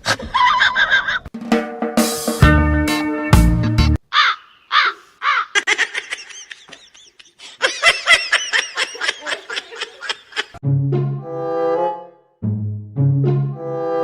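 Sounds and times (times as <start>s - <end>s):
music: 1.4s - 4.0s, 10.6s - 14.0s
animal chirping calls: 4.1s - 7.3s.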